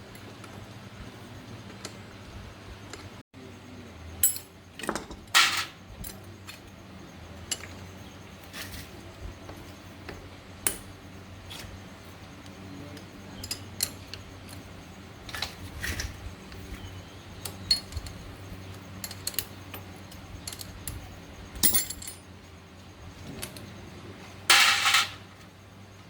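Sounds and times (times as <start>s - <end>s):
faint steady hum: 0.0s - 26.0s
metal parts clinking: 4.2s - 6.8s, 7.4s - 7.9s, 13.0s - 22.3s, 24.5s - 25.5s.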